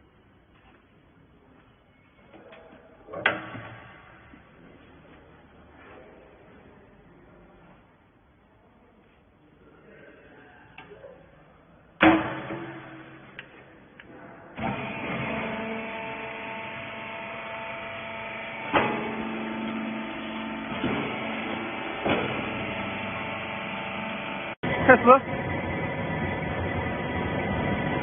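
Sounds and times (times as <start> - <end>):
loud metallic clang: 12.0 - 13.5
baler motor humming: 14.6 - 28.0.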